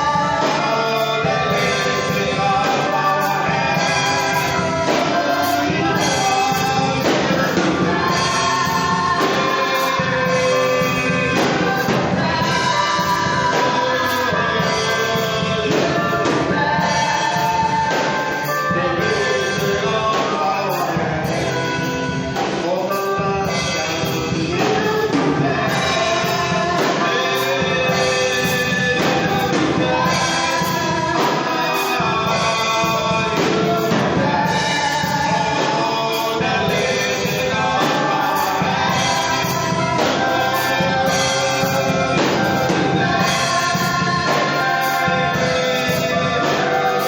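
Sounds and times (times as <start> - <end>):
group of voices singing: 0.0 - 47.0
instrumental accompaniment with beat: 0.0 - 47.0.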